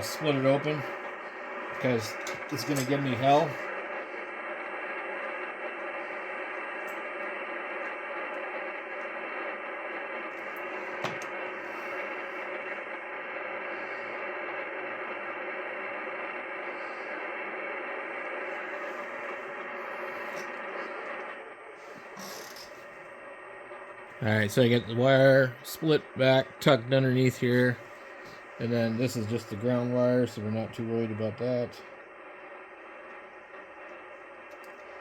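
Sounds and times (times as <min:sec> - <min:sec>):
radio static hiss: 0:00.0 - 0:35.0.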